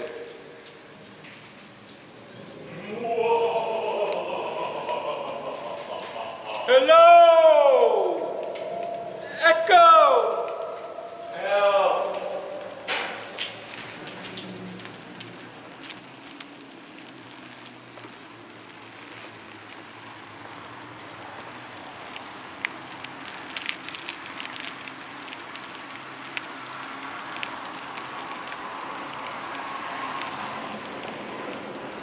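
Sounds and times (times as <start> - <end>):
small clicks and ticks: 0.0 - 2.9, 10.2 - 32.0
bicycle tyres rolling: 0.0 - 32.0.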